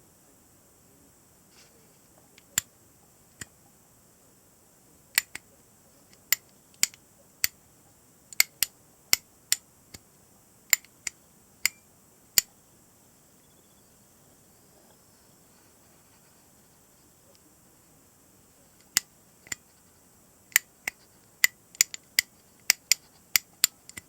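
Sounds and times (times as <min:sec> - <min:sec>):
gear-shift toy clicking: 0:08.3 - 0:09.6, 0:20.5 - 0:24.0.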